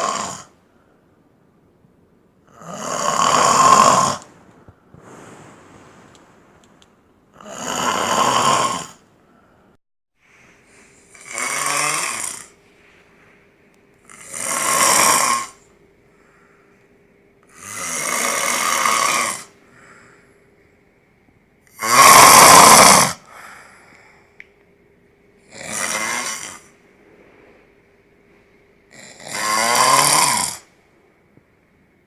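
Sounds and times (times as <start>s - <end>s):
man snoring heavily: 0.0s - 0.5s, 2.5s - 4.3s, 7.3s - 9.0s, 11.1s - 12.5s, 14.1s - 15.6s, 17.5s - 19.5s, 21.8s - 23.3s, 25.5s - 26.7s, 28.9s - 30.7s
quiet breaths: 4.0s - 7.5s, 9.1s - 11.3s, 15.6s - 17.6s, 19.5s - 21.4s, 23.2s - 24.6s.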